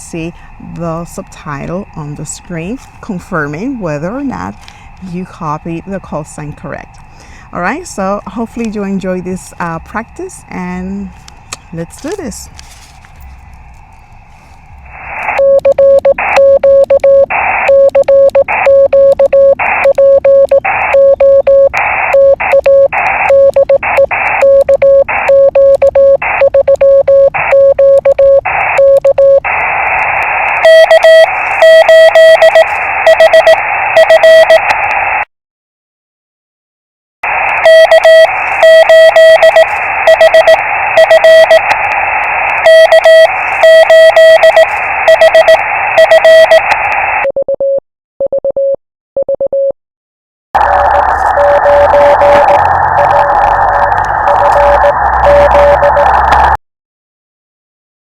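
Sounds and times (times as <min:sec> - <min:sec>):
radio band hiss: 0:00.0 - 0:15.4, 0:17.3 - 0:17.8, 0:21.8 - 0:24.5, 0:26.2 - 0:26.5, 0:28.4 - 0:35.2, 0:37.2 - 0:47.2, 0:50.6 - 0:56.6
morse code tones: 0:14.9 - 0:34.8, 0:37.2 - 0:49.8, 0:50.6 - 0:56.6.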